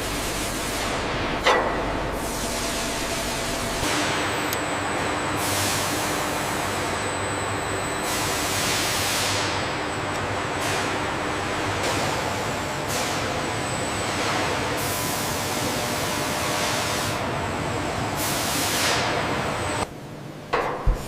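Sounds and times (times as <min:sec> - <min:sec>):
machinery noise: 0:00.0 - 0:08.6
loud industrial hissing: 0:02.1 - 0:04.0.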